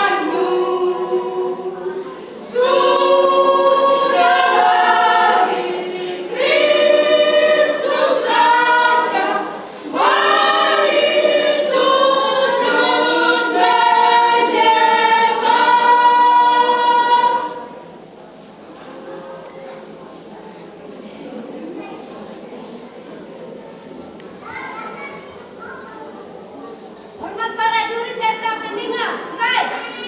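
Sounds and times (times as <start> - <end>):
women's choir singing: 0.0 - 18.0.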